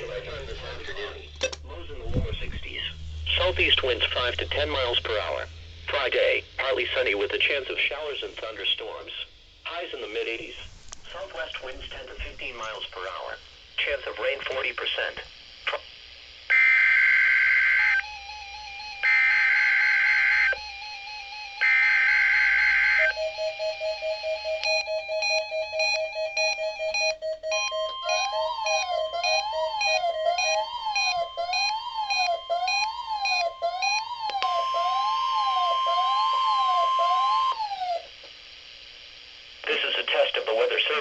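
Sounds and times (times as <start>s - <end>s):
steady high tone: 0.0s - 14.0s, 16.5s - 38.1s
fast beeping tone: 24.4s - 37.6s
digital data tone bursts: 24.7s - 38.0s
wavering alert tone: 26.4s - 38.0s
siren-like sliding tone: 26.4s - 38.1s.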